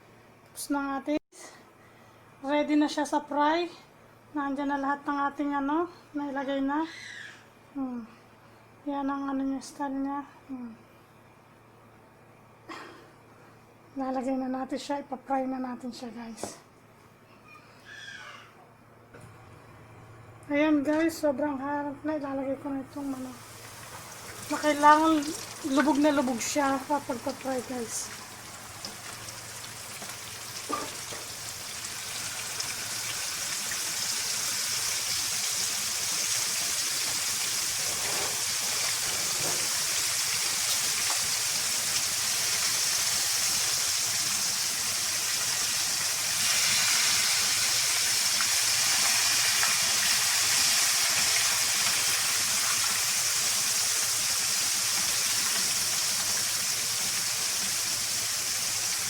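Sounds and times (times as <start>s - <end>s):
chicken deep-frying in oil: 23.0s - 59.0s.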